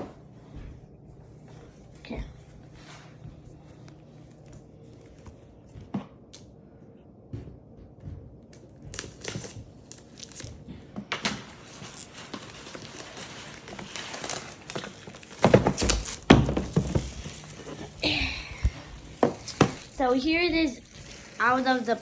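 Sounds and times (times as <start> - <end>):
plastic shrink wrap tearing: 9.0 - 22.0
box knocking and rustling: 13.9 - 20.2.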